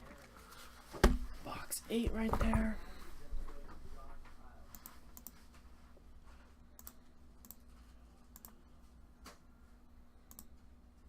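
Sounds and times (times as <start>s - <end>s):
faint steady hum: 0.0s - 11.0s
computer clicks: 4.7s - 5.4s, 6.7s - 7.7s, 8.3s - 8.6s, 10.2s - 10.6s.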